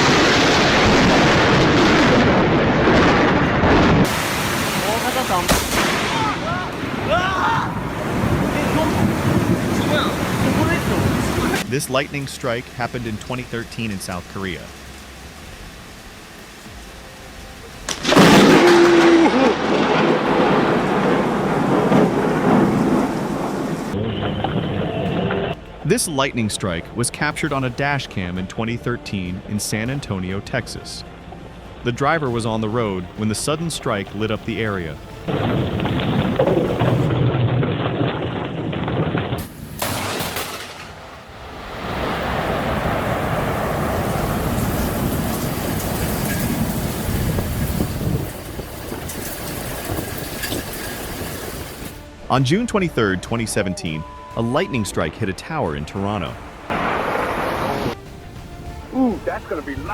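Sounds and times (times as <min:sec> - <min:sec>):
thunder rumbling: 0:00.0 - 0:11.8, 0:17.8 - 0:25.9, 0:34.2 - 0:59.9
lightning crack: 0:00.0 - 0:14.0, 0:17.8 - 0:25.7, 0:34.2 - 0:52.2, 0:56.4 - 0:59.9
rain hissing: 0:00.0 - 0:26.0, 0:32.6 - 0:52.2, 0:56.0 - 0:59.9.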